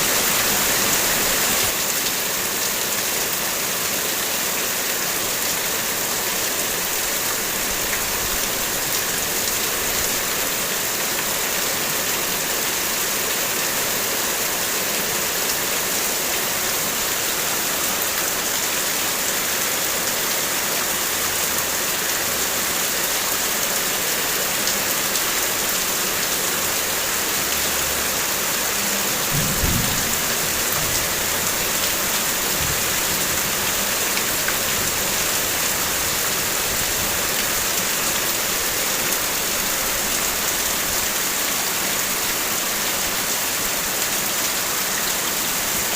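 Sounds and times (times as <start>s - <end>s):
heavy rain falling: 0.0s - 45.9s
low thump: 29.3s - 31.0s.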